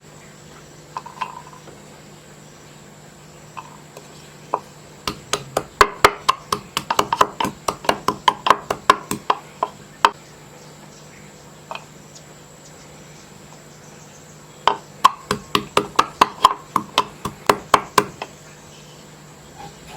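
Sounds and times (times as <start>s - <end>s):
sharp clicks and taps: 5.1s - 9.4s.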